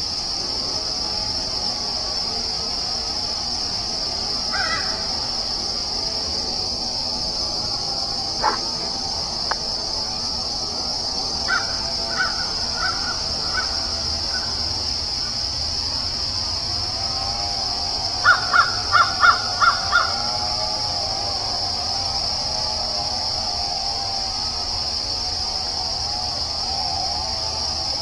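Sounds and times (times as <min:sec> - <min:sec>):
insect chorus: 0:00.0 - 0:28.0
crow cawing: 0:04.5 - 0:04.9, 0:11.5 - 0:13.8, 0:18.2 - 0:20.2.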